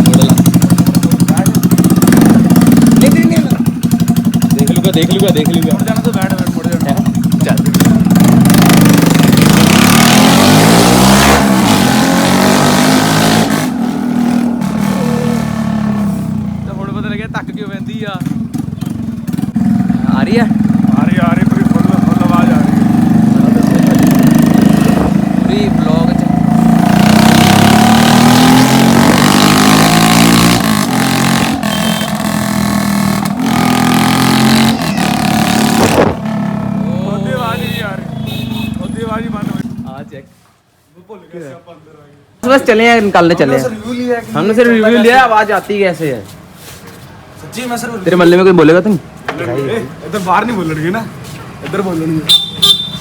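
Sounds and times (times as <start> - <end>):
motorcycle revving past: 7.2 - 16.6, 18.2 - 38.5.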